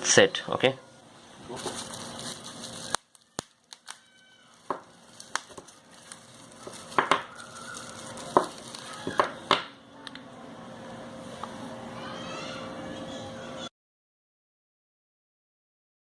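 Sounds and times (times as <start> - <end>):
plastic pack clicks and crinkles: 1.5 - 9.4.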